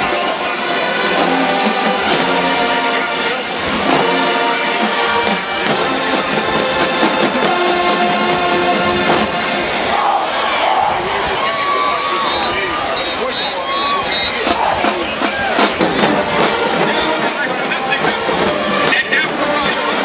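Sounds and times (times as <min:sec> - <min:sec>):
brass band playing chords: 0:00.0 - 0:20.0
drum hits: 0:01.2 - 0:03.0, 0:03.6 - 0:09.7, 0:14.4 - 0:20.0.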